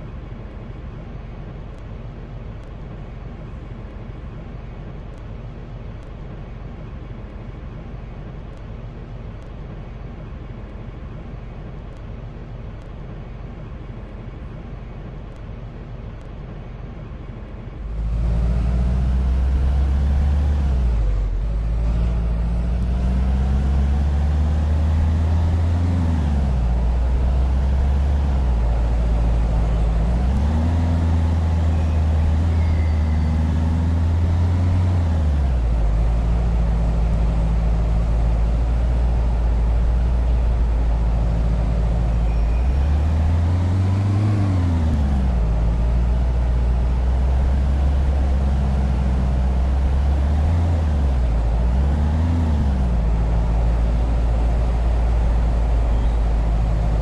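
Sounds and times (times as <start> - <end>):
vehicle engine running: 0.0 - 57.0.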